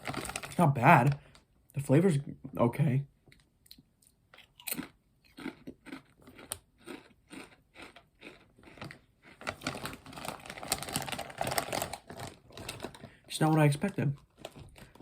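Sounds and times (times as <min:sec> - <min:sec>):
chewing crunchy chips: 0:03.4 - 0:13.2, 0:14.2 - 0:15.0.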